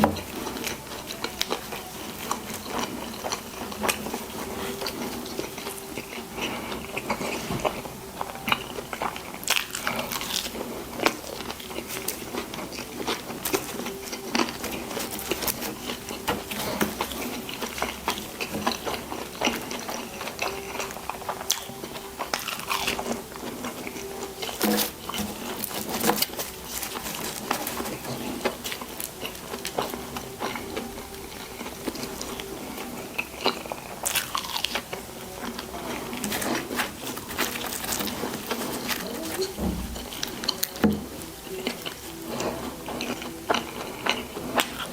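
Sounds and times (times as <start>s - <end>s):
biting and wet chewing: 0.0s - 44.9s.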